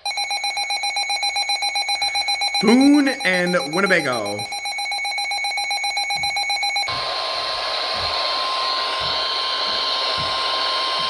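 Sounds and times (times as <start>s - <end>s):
pulsing electronic alert beep: 0.0s - 6.9s
steady warning alarm tone: 0.0s - 7.0s.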